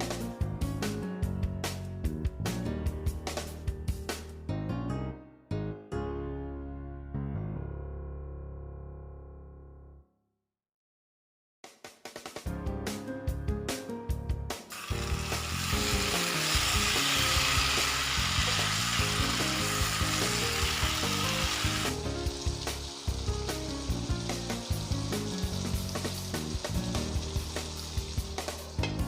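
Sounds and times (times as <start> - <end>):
chicken sizzling in a pan: 14.7 - 29.0.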